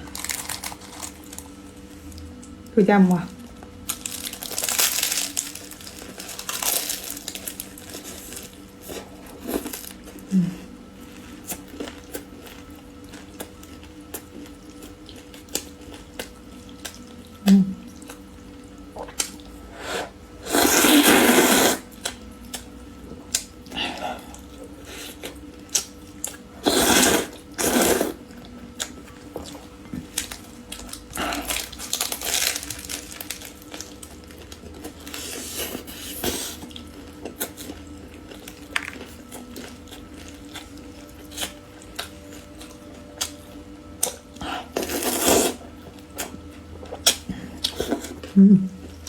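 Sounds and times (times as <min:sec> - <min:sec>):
noisy mouth eating sounds: 0:13.3 - 0:22.7, 0:23.3 - 0:40.8, 0:44.4 - 0:49.0.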